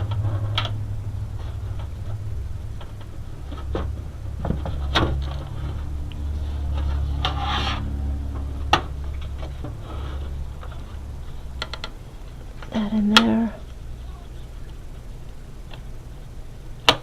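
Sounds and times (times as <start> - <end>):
steady low hum: 0.0 - 17.0
brief scraping rub: 6.4 - 7.9.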